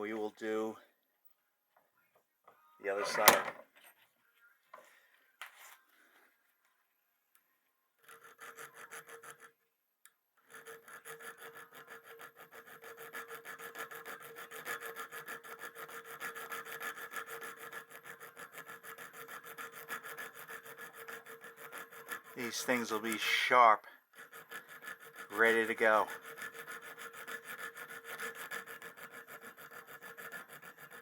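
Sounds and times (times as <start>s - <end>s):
file scraping on steel: 2.9s - 3.6s, 8.0s - 9.6s, 10.4s - 31.0s.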